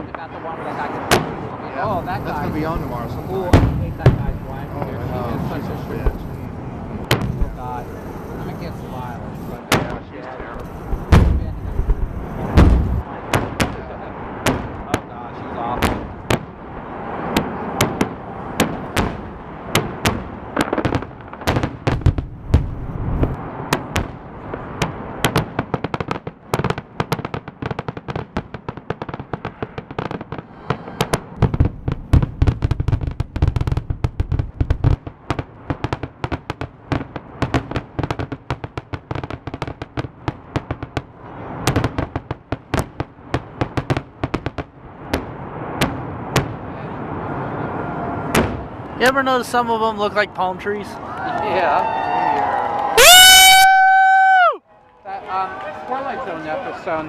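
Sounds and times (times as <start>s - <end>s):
deep firework booms: 0.0s - 50.0s
fireworks crackling and banging: 0.0s - 57.0s.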